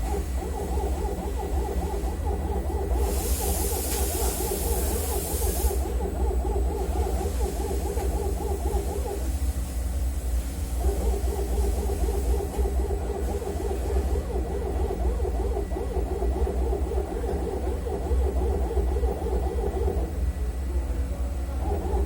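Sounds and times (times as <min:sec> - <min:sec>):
hiss: 0:02.9 - 0:05.9.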